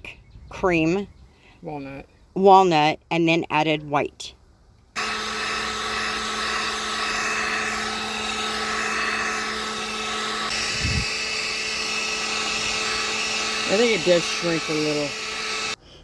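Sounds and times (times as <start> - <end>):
hot-air blower running: 5.0 - 15.8.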